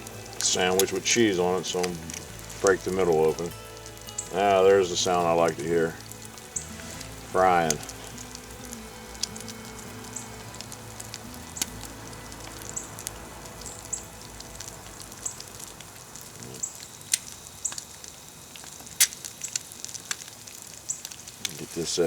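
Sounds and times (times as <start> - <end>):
egg sizzling in oil: 0.0 - 22.0
oil crackling and popping: 0.0 - 22.0.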